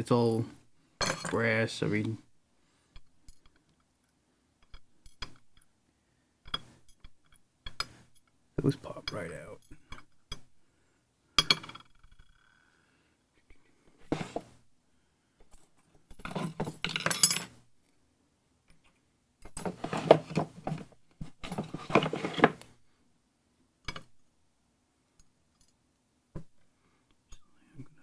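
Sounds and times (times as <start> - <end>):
lock pins clinking in tray: 1.0 - 1.4, 16.2 - 17.5.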